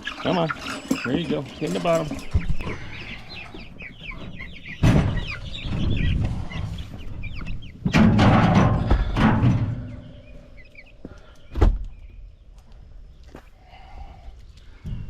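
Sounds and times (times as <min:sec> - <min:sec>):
chicks peeping: 0:00.0 - 0:15.0
bumping and rustling: 0:07.8 - 0:10.0.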